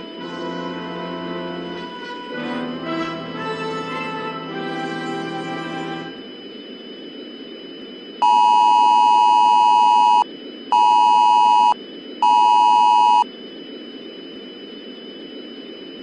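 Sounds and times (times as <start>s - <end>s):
static hiss: 0.0s - 9.4s
faint high whine: 0.0s - 16.0s.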